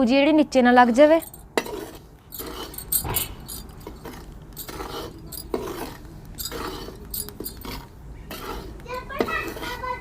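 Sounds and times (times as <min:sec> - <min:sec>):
spatula scraping a metal pan: 0:00.8 - 0:03.0, 0:03.8 - 0:10.0
metal clinking on metal: 0:01.0 - 0:01.6, 0:02.3 - 0:07.9.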